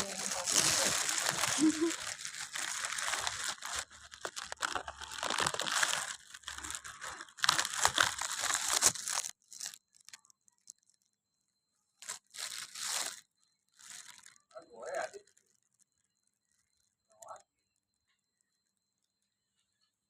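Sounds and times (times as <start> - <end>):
rustling and crinkling: 0.0 - 11.0, 12.0 - 13.2, 13.8 - 16.7.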